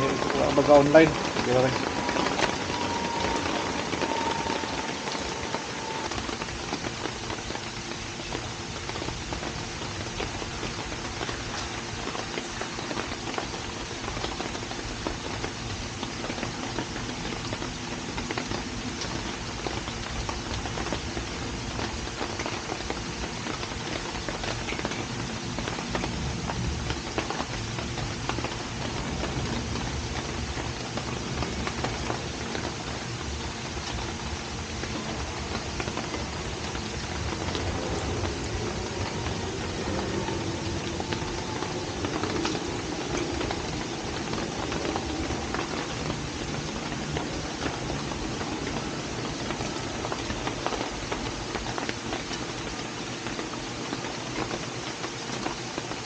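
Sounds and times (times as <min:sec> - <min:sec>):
faint hum: 0:00.0 - 0:12.2
rain pattering: 0:00.0 - 0:56.0.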